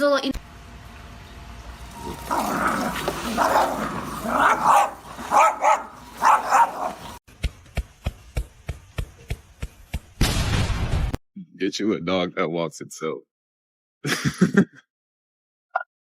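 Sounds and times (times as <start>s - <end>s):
dog barking: 3.4s - 7.2s.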